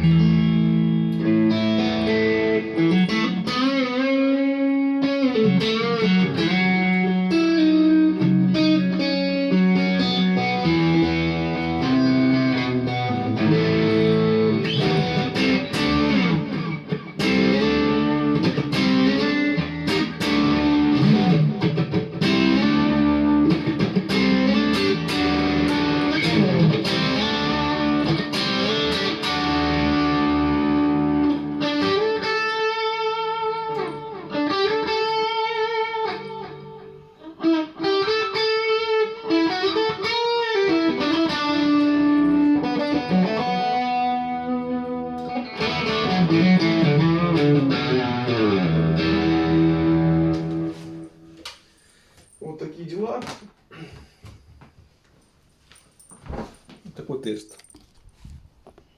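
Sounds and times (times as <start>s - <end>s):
electric guitar lead playing: 0.0s - 52.0s.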